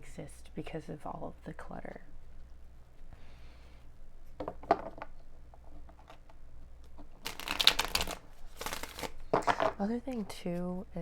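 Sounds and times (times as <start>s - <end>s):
card deck riffle shuffle: 7.2s - 10.2s.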